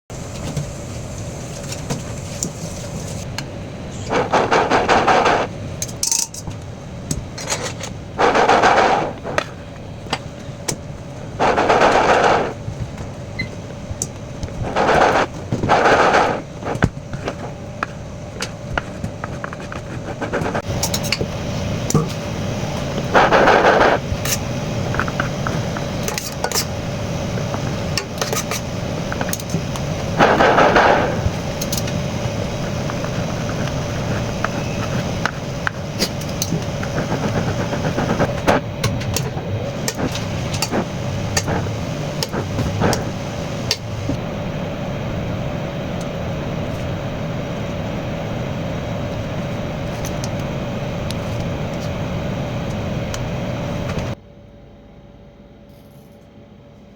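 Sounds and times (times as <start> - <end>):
steady hum: 0.1 - 55.7
turntable rattling as it spins: 3.9 - 6.4, 8.2 - 9.4, 11.4 - 12.6, 14.6 - 16.5, 19.2 - 44.2
scattered clicks and knocks: 4.0 - 9.5, 18.4 - 44.2.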